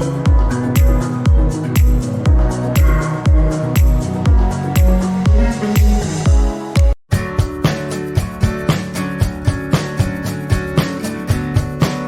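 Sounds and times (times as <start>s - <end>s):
steady drum beat: 0.0s - 12.0s
strummed guitar: 7.1s - 12.0s.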